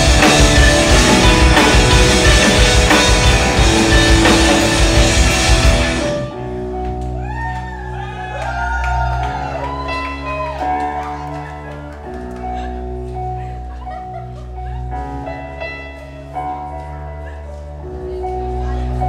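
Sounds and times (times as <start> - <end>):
rock band playing loudly: 0.0 - 14.1.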